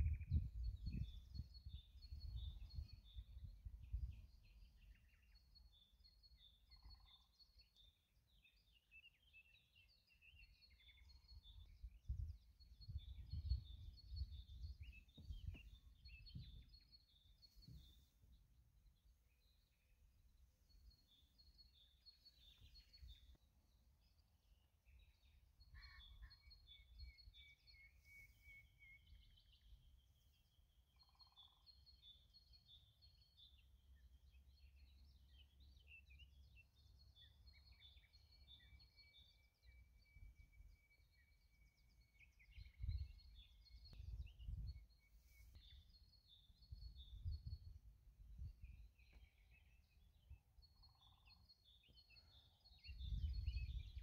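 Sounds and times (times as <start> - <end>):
birds chirping: 19.3 - 24.3, 24.9 - 33.6.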